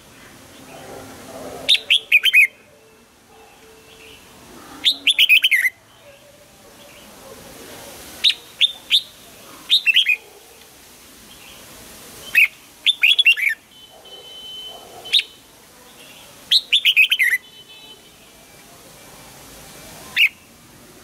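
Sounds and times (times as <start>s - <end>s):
bird singing whistled notes: 3.8s - 5.8s, 8.2s - 10.2s, 12.2s - 13.6s, 16.5s - 17.4s.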